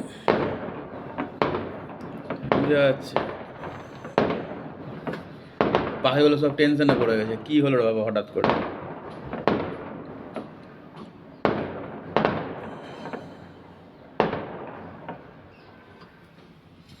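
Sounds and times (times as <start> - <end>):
fireworks pops: 0.0 - 7.2, 8.4 - 13.4
fireworks bangs: 0.0 - 15.9.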